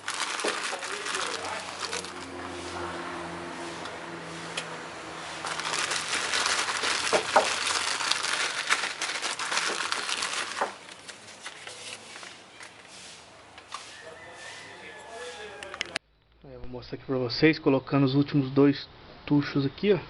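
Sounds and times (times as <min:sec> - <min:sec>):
paper wrapping crinkling: 0:00.0 - 0:02.7, 0:05.3 - 0:13.1.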